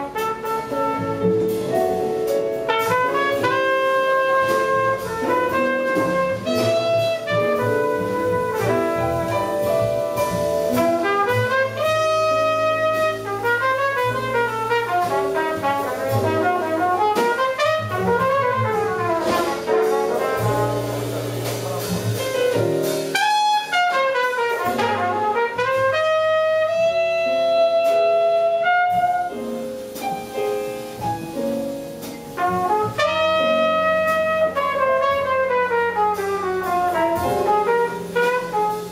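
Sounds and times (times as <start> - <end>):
horn melody: 0.0 - 38.9
jazz band playing: 0.0 - 38.9.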